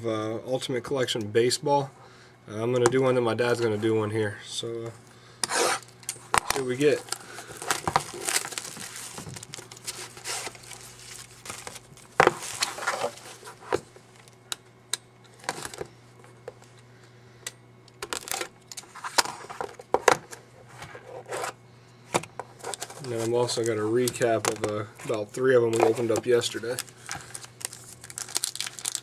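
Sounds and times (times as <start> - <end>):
wrapper crinkling and tearing: 6.3 - 13.6, 18.0 - 19.4, 22.6 - 29.0.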